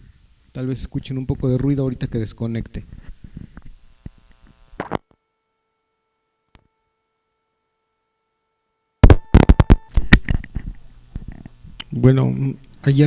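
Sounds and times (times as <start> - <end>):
connector crackles and pops: 9.0 - 11.9.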